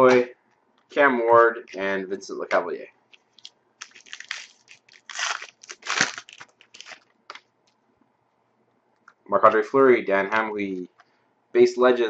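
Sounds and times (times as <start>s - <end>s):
foil wrapper crinkling and tearing: 3.2s - 7.4s.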